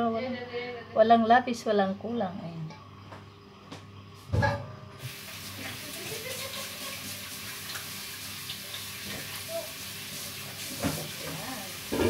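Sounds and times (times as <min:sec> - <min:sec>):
food sizzling in a hot pan: 0:05.0 - 0:12.0.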